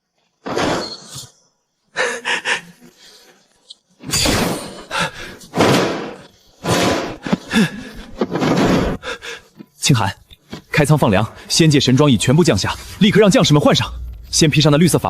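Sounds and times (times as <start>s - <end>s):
heavy slamming thuds: 5.5s - 7.3s.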